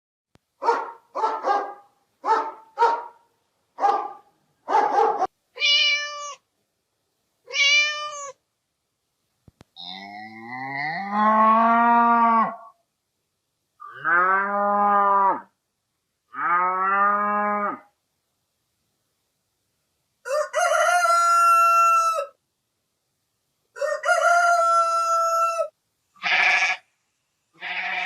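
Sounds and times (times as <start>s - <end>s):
cat meowing: 5.6s - 6.4s, 7.5s - 8.4s, 27.6s - 28.0s
short harsh animal calls: 7.5s - 8.4s, 26.2s - 26.9s, 27.6s - 28.0s
cow mooing: 9.8s - 12.7s, 16.4s - 17.8s.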